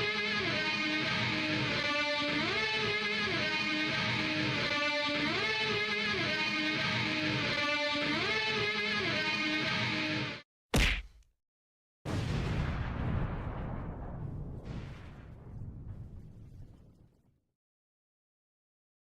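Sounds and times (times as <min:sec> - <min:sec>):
electric guitar riff: 0:00.0 - 0:10.4
steady music backing: 0:00.0 - 0:10.4.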